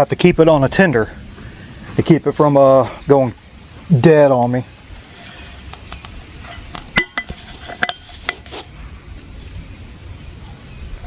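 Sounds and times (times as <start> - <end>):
metal tools clinking: 6.4 - 8.7.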